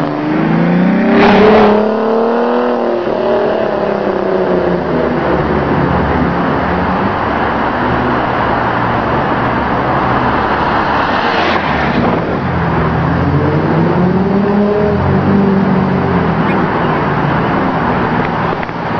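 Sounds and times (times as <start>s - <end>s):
car engine accelerating past: 0.0s - 4.1s.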